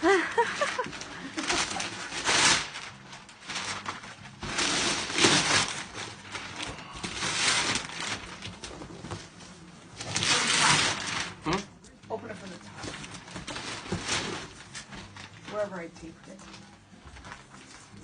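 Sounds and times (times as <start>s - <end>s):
paper rustling: 0.1s - 18.0s
paper and tape ripping: 0.2s - 9.4s, 10.0s - 11.7s, 12.8s - 15.8s.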